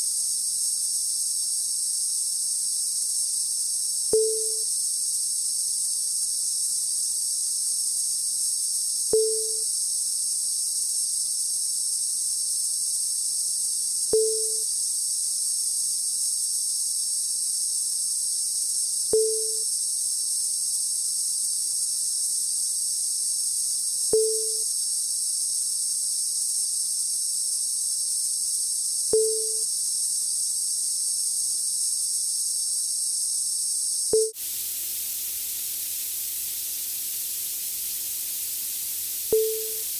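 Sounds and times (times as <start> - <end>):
faint low hum: 34.2 - 39.9
high-pitched electronic buzz: 34.2 - 39.9
crt flyback hiss: 34.3 - 39.9
short electronic blip: 36.7 - 39.9.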